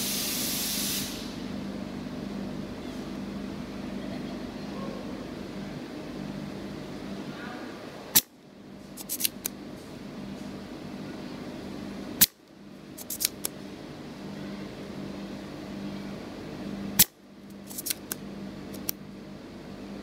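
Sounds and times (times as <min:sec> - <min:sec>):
steady low hum: 0:00.0 - 0:20.0
desoldering pump snapping: 0:09.0 - 0:09.6, 0:12.2 - 0:13.6, 0:17.0 - 0:19.0.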